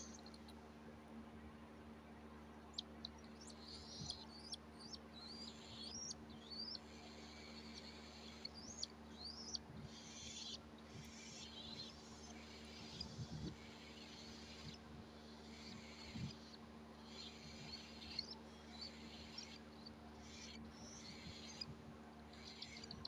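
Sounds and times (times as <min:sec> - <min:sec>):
faint steady hum: 0:00.0 - 0:23.0
cockatiel chirping: 0:03.4 - 0:14.8, 0:15.4 - 0:21.7.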